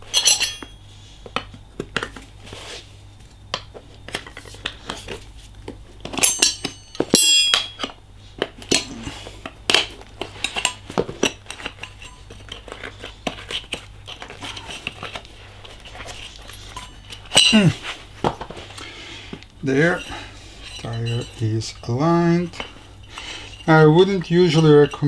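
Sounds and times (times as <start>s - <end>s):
metal tools clinking: 0.0s - 0.9s, 6.1s - 7.9s, 10.2s - 18.4s, 19.6s - 25.0s
ringing metal clatter: 0.0s - 0.9s, 6.2s - 7.9s, 16.7s - 17.8s, 19.8s - 22.7s
faint low hum: 0.0s - 25.0s.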